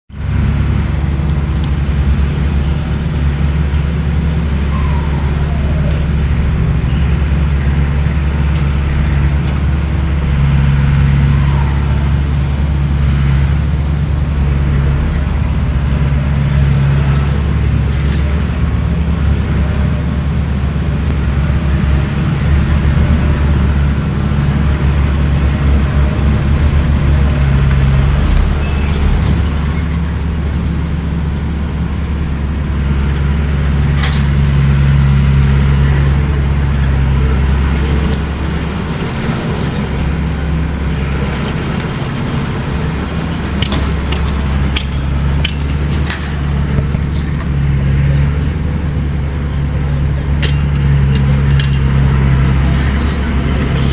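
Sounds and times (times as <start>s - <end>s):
bulldozer diesel engine running: 0.1s - 53.9s
sharp metallic clanks: 43.6s - 47.5s, 50.4s - 53.2s.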